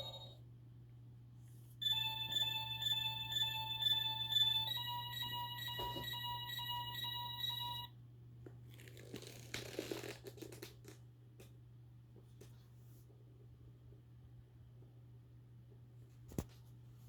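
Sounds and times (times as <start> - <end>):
low steady hum: 0.0 - 9.0.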